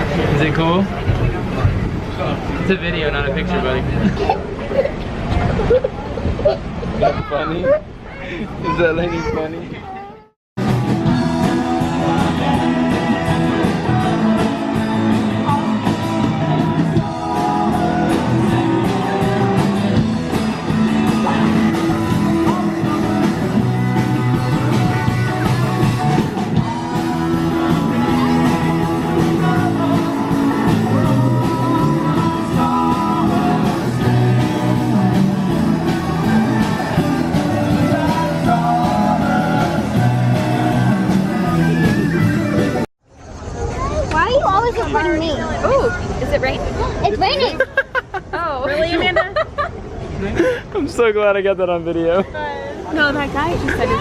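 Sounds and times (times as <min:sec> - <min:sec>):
rock music with guitar: 0:10.6 - 0:42.8
person singing: 0:11.1 - 0:20.0, 0:21.2 - 0:42.8.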